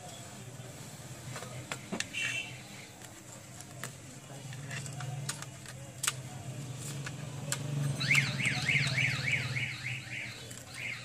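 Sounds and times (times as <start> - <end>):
electronic warbling alarm: 8.0 - 11.0.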